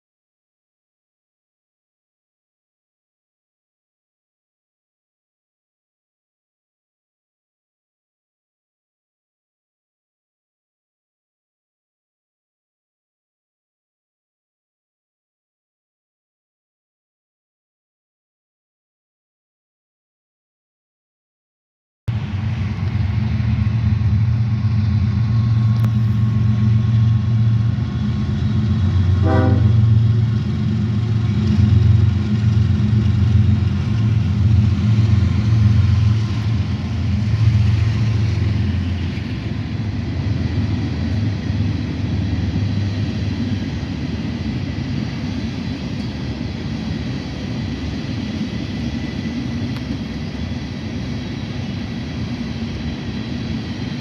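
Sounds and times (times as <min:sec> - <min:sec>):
diesel locomotive engine drone: 0:22.1 - 0:54.0.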